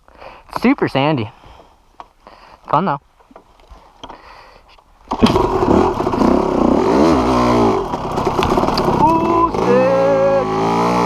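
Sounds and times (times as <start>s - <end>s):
dirt bike engine revving: 5.1s - 11.0s.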